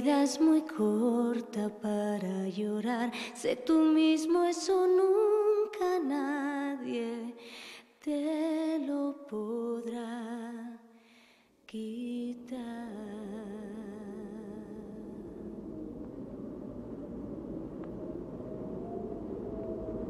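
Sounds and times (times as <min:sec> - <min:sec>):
woman singing wordless melody: 0:00.0 - 0:11.0, 0:11.7 - 0:16.0.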